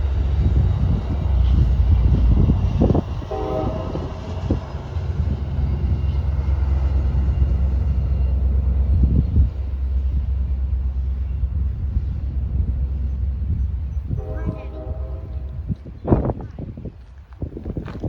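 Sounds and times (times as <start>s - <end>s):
train passing rumble: 0.0s - 18.0s
train horn: 2.8s - 4.6s, 14.1s - 15.8s.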